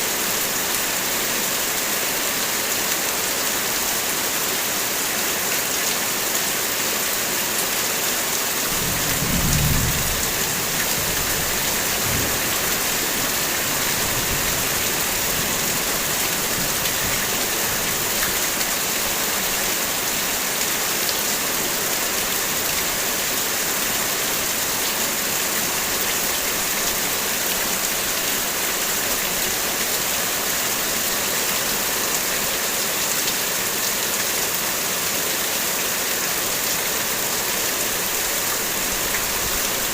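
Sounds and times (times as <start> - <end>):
heavy rain: 0.0 - 39.9
thunder rumbling: 8.7 - 12.9.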